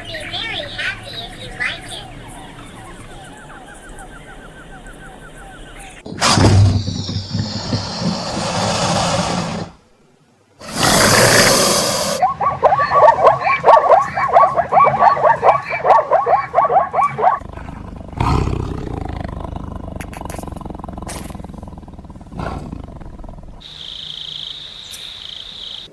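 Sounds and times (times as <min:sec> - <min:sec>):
rapid high animal calls: 0:00.0 - 0:09.8, 0:10.6 - 0:25.9
animal roars: 0:06.1 - 0:09.8, 0:10.6 - 0:23.7.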